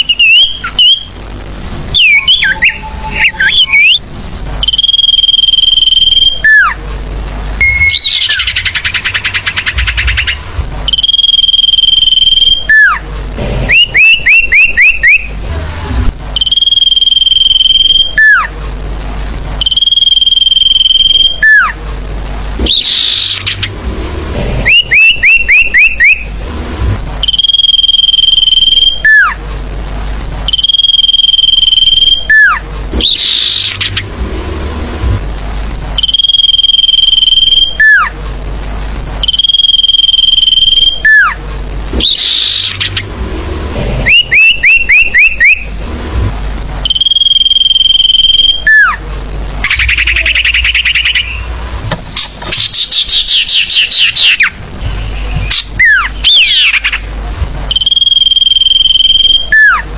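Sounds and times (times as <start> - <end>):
recorded bird call whistles: 0.0 - 1.1, 1.9 - 4.0, 4.6 - 6.8, 7.6 - 13.0, 13.7 - 15.3, 16.4 - 18.5, 19.6 - 21.8, 22.6 - 23.7, 24.7 - 26.3, 27.2 - 29.4, 30.5 - 34.0, 36.0 - 38.1, 39.2 - 41.4, 42.0 - 43.0, 44.0 - 45.7, 46.8 - 49.0, 49.6 - 51.5, 52.5 - 57.0, 57.7 - 59.8
harsh buzzy trills: 0.0 - 59.9.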